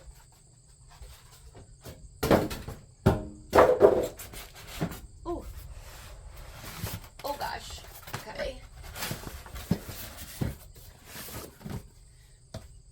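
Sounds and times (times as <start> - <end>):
parts knocking in a box: 1.5 - 5.1.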